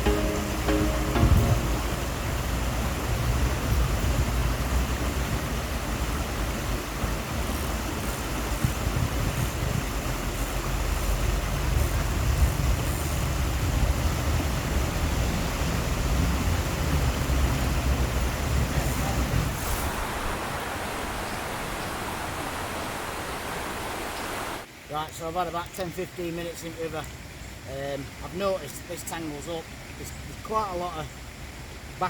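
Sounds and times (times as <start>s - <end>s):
flowing river rushing: 13.3s - 24.8s.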